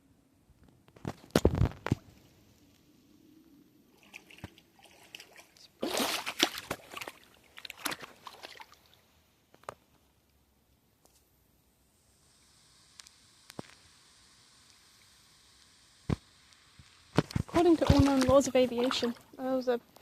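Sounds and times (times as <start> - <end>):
water splashing and sloshing: 3.9 - 9.8, 17.2 - 19.7.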